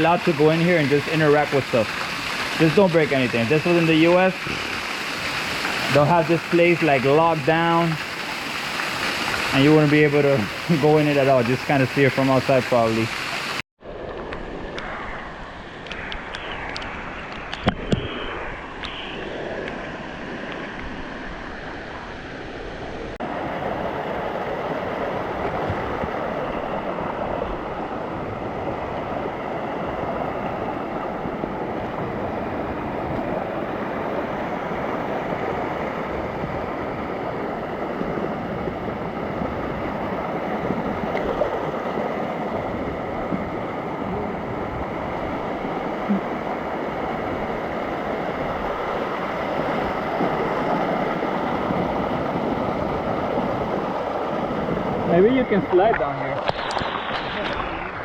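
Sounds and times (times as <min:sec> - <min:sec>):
cascading water rushing: 0:00.0 - 0:13.6.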